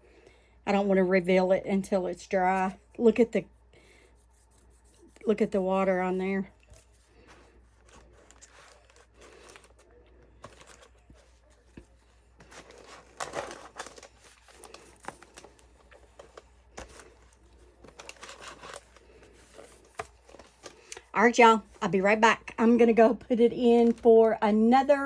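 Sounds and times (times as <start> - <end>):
flower press rustling and clicking: 6.6 - 22.0.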